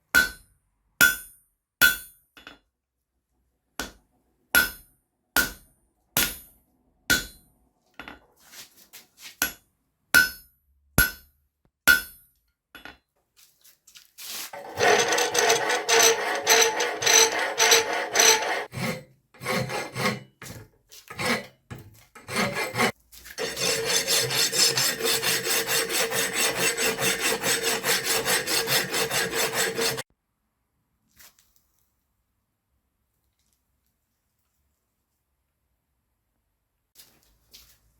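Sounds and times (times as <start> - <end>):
hand tool rasping on steel: 14.5 - 21.6, 22.2 - 30.1.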